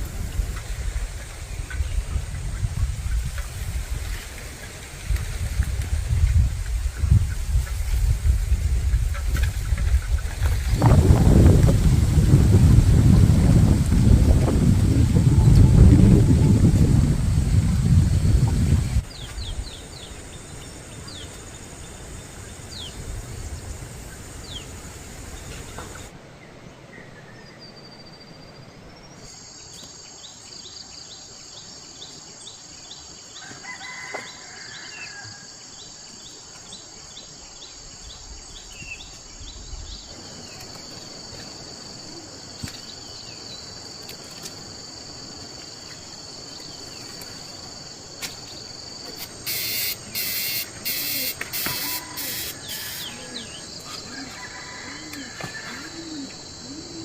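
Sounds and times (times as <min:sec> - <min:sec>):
insects trilling: 0:00.0 - 0:26.1, 0:27.8 - 0:57.0
background hiss: 0:00.0 - 0:33.5, 0:34.3 - 0:57.0
bird chirps: 0:49.4 - 0:54.0.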